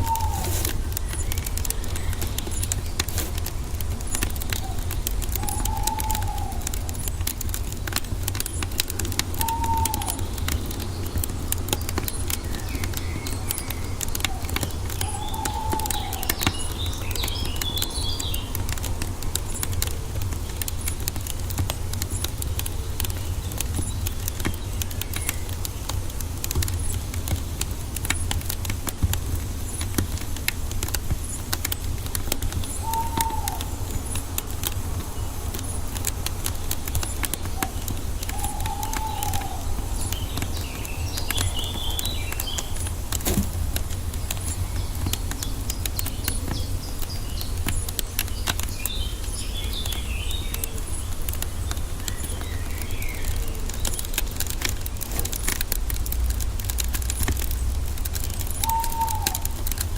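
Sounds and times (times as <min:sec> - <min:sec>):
bird call: 0:00.0 - 0:03.4, 0:04.5 - 0:07.1, 0:09.3 - 0:10.8, 0:12.6 - 0:18.5, 0:32.6 - 0:34.3, 0:37.0 - 0:42.9, 0:58.5 - 0:59.6
wood fire crackling and popping: 0:00.0 - 0:59.9
high bird twitter: 0:37.0 - 0:43.0, 0:58.5 - 0:59.6.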